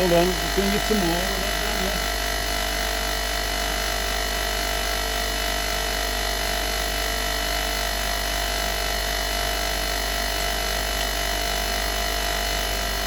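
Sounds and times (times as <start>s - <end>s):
wire brush wheel humming: 0.0s - 2.7s.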